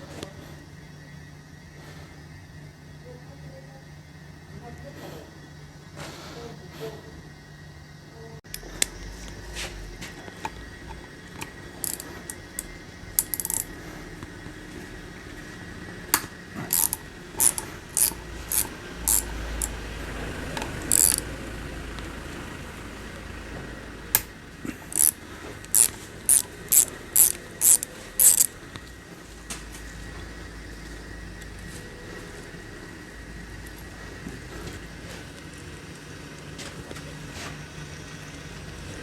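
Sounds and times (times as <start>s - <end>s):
ratchet wrench clicking: 8.5s - 9.0s, 11.4s - 13.7s, 16.7s - 19.8s, 20.5s - 21.3s, 24.9s - 28.6s.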